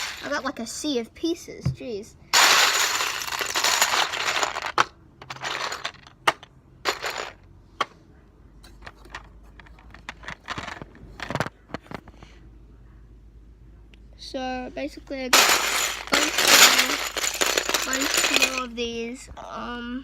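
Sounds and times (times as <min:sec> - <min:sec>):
plastic toy bricks rattling: 0:00.0 - 0:00.4, 0:02.4 - 0:07.4, 0:08.7 - 0:12.0, 0:15.4 - 0:18.7
plastic pieces clicking: 0:02.4 - 0:07.4, 0:08.7 - 0:12.0, 0:15.4 - 0:18.7.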